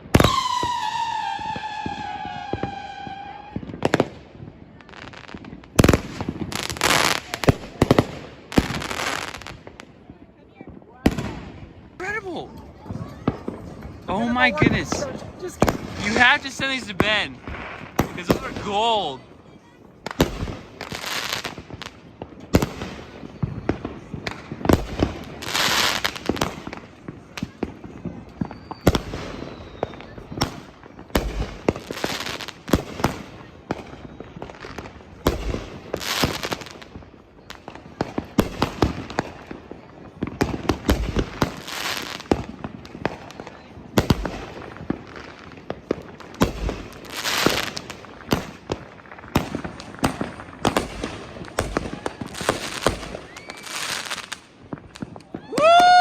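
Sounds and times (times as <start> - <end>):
fireworks bangs: 0.0 - 56.0
fireworks crackling: 0.0 - 56.0.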